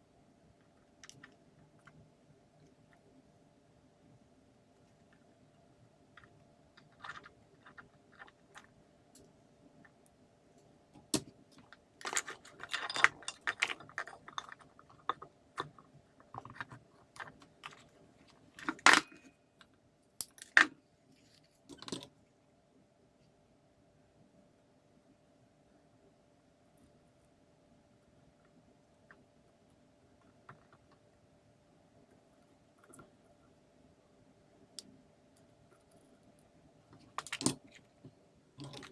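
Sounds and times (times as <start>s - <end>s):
faint steady hum: 0.0s - 38.9s
small parts clicking and rattling: 0.6s - 3.1s, 6.1s - 10.0s, 10.6s - 20.7s, 21.3s - 22.1s, 34.8s - 38.9s.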